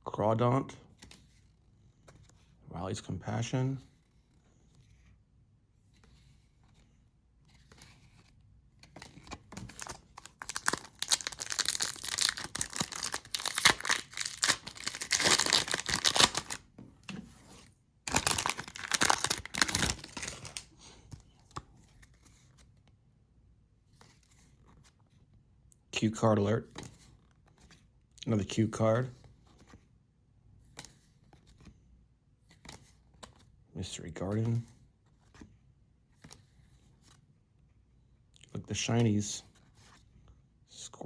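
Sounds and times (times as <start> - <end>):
foil wrapper tearing and crinkling: 9.6 - 16.6, 18.1 - 20.7.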